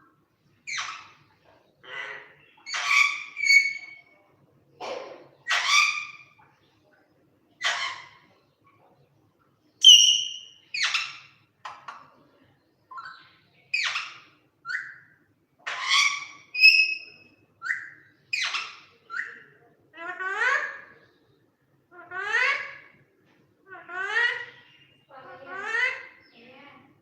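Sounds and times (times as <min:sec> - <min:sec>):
parrot squawking and chirping: 0:00.7 - 0:04.1, 0:05.4 - 0:06.4, 0:07.6 - 0:08.3, 0:09.8 - 0:12.1, 0:12.9 - 0:21.2, 0:21.9 - 0:23.0, 0:23.7 - 0:26.4
parrot whistling: 0:09.8 - 0:10.5.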